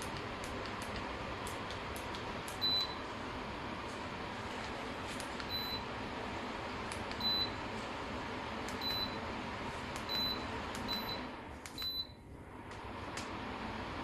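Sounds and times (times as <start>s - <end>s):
air cooler fan running: 0.0s - 14.0s
touch display click and beep: 10.1s - 12.1s.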